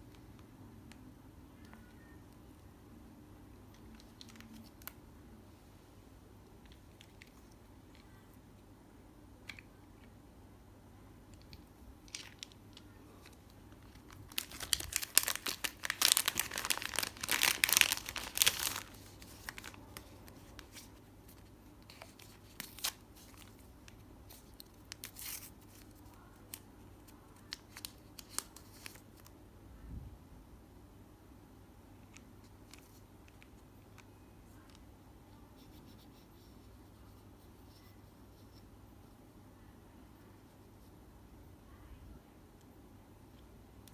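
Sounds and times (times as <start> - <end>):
packaging torn and crinkled: 12.0 - 26.6, 27.3 - 29.3.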